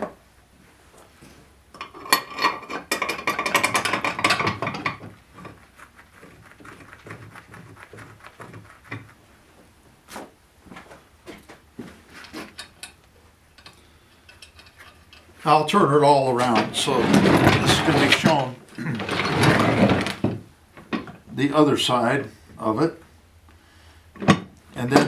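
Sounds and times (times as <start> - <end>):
metal bolts clinking and rattling: 1.8 - 5.6, 12.4 - 15.3.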